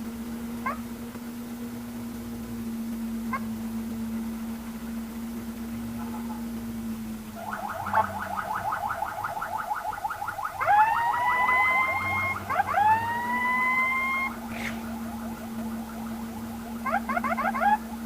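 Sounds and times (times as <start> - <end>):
ambulance siren yelp: 7.3 - 18.0
siren whoop sliding up: 7.4 - 18.0.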